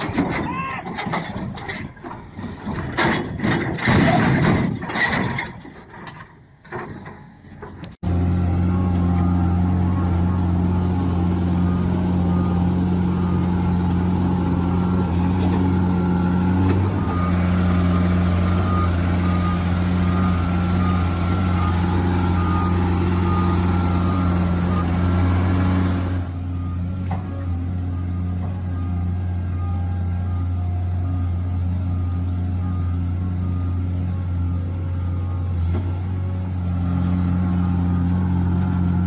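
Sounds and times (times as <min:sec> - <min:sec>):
truck engine droning: 0:08.0 - 0:39.0
reversing alarm beeping: 0:08.1 - 0:38.7.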